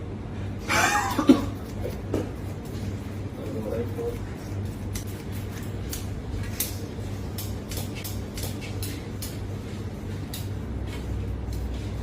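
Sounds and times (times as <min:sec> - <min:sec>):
steady low hum: 0:00.0 - 0:12.0
scissors snipping: 0:04.7 - 0:09.4, 0:10.2 - 0:10.6.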